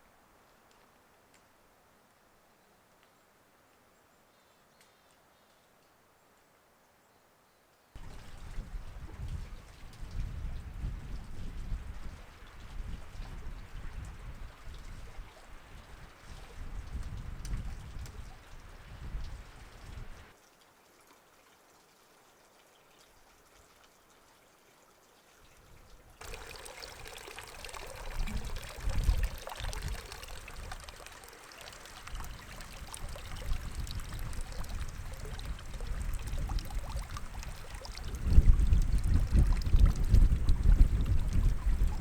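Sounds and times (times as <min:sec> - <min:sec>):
wind buffeting microphone: 0:08.0 - 0:20.3, 0:26.2 - 0:31.1, 0:31.7 - 0:42.0.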